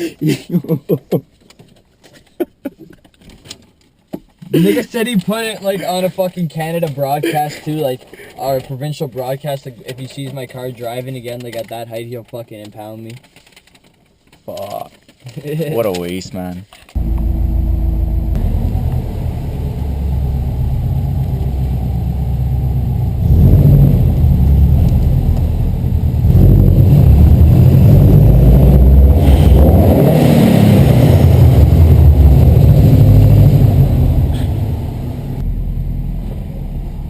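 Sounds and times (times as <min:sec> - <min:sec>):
car engine while driving: 0:17.0 - 0:37.0.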